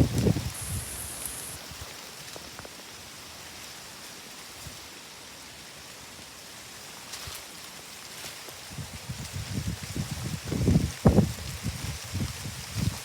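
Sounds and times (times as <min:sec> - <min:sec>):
wind rustling tree leaves: 0:00.0 - 0:13.0
faint ticks: 0:00.2 - 0:01.6.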